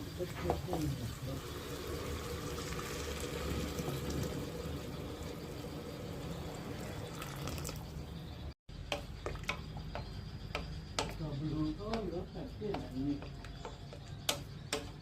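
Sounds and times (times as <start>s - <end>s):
water pouring into vessel: 1.4s - 7.8s.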